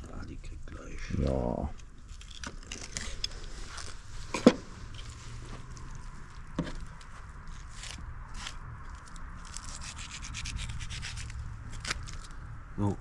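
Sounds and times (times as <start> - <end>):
knife scraping a carcass: 2.1 - 5.2, 6.6 - 12.3.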